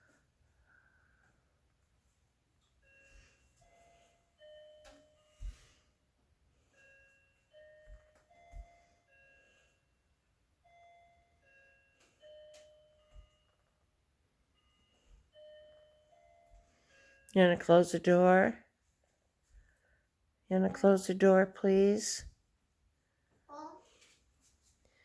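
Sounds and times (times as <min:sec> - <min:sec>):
refrigerator door alarm chiming: 0:02.8 - 0:05.8, 0:06.7 - 0:09.9, 0:10.6 - 0:17.7.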